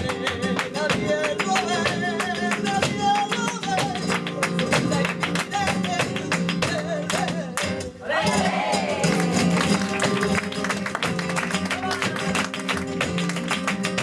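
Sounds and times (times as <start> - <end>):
person singing: 0.0 - 4.1
flamenco guitar strumming: 0.0 - 14.0.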